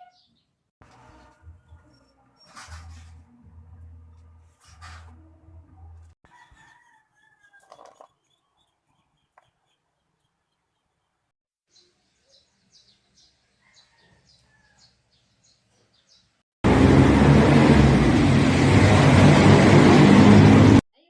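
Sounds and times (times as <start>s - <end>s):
faint bird chirps: 8.2s - 14.9s
loud machine running: 16.6s - 20.8s.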